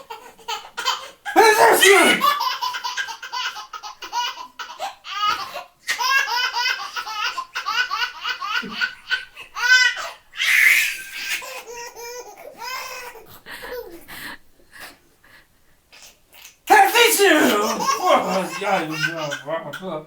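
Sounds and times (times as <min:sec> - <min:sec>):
baby laughing: 0:00.1 - 0:10.0, 0:16.7 - 0:19.8
man sneezing: 0:01.4 - 0:02.3, 0:16.7 - 0:19.2.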